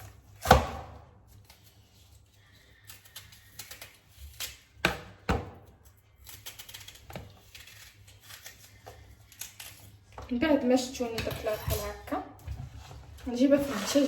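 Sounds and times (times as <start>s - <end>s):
knife chopping onion: 0.0s - 1.0s.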